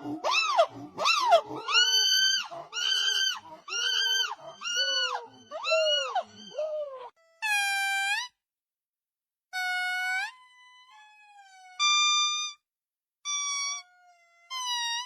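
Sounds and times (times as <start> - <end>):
long monkey call: 0.0 - 7.7
monkey shrill calls: 0.2 - 7.6.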